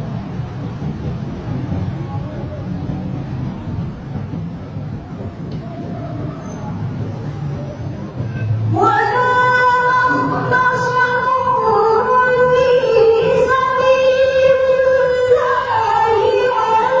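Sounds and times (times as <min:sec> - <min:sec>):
woman singing long held notes: 0:08.7 - 0:17.0.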